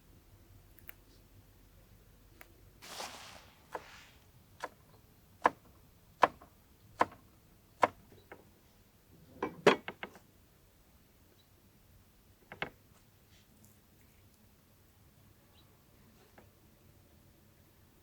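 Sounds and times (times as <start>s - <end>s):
brief rustle: 2.8s - 4.3s.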